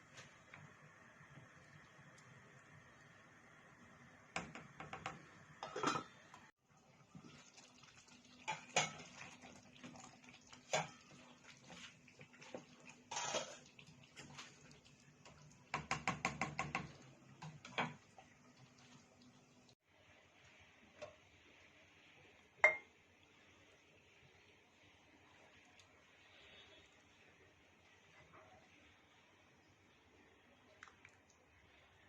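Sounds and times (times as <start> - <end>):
metal utensils clinking on dishes: 5.6 - 6.2, 13.1 - 13.6.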